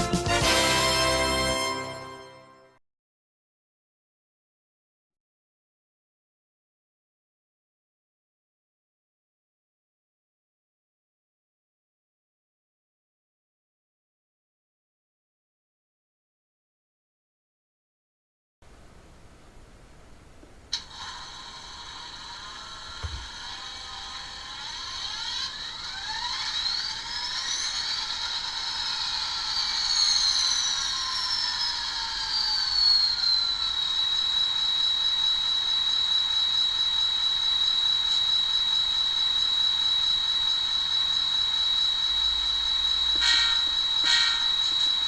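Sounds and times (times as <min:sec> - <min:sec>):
click: 0:20.4 - 0:21.0
diesel locomotive sound from tiny speaker: 0:20.7 - 0:45.0.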